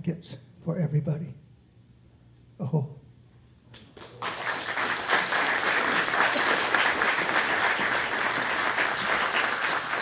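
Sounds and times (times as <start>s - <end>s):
audience applauding: 3.9s - 10.0s.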